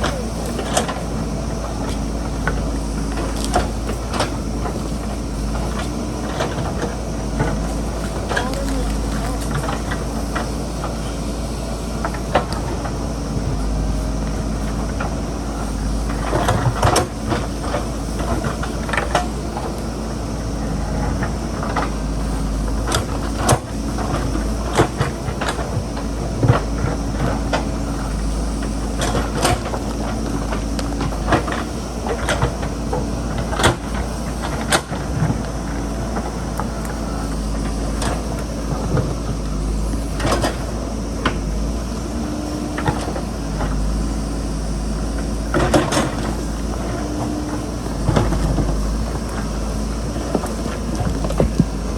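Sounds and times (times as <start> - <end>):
diesel engine running: 0.0 - 51.9
rock and soil knocking: 45.5 - 51.9.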